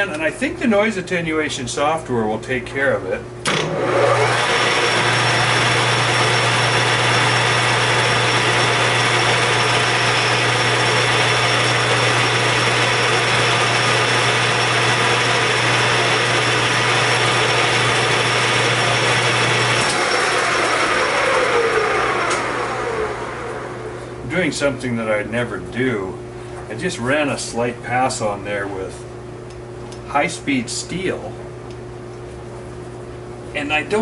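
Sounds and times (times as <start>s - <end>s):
metal lathe humming: 3.5s - 24.2s.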